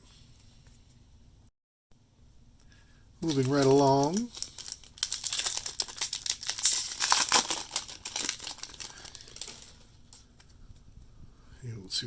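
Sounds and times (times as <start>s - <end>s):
foil wrapper crinkling and tearing: 3.2s - 10.4s.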